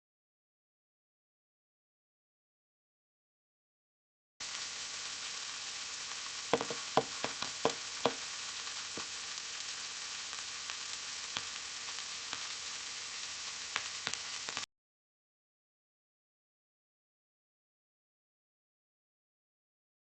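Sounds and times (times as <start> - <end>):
butter sizzling with pops: 4.4 - 14.7.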